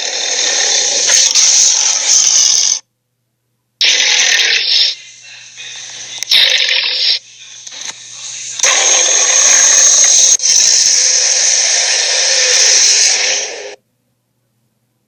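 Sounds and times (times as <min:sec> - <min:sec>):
creature hissing: 0:00.0 - 0:02.8, 0:03.8 - 0:05.0, 0:10.3 - 0:13.8.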